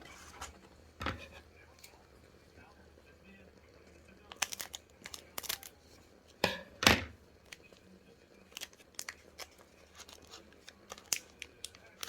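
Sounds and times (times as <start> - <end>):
card pack wrapper tearing: 4.3 - 5.7, 8.5 - 12.0
cards and wrapper rustling: 4.3 - 5.8, 8.4 - 12.0.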